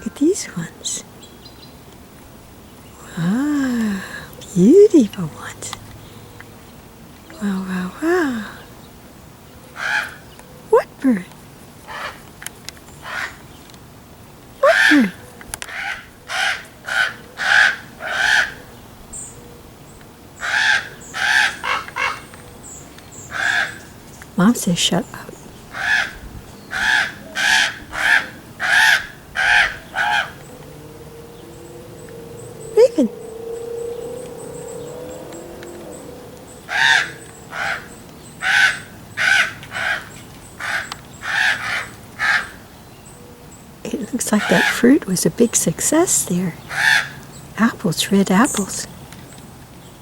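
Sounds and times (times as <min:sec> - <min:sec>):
young ravens begging calls: 0:00.0 - 0:49.4.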